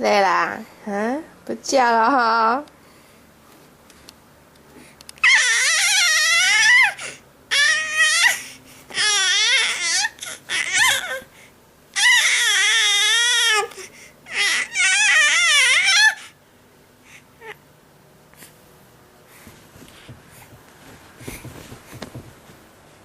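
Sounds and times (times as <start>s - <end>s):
infant crying: 5.2s - 11.3s, 12.0s - 16.4s, 17.4s - 17.6s.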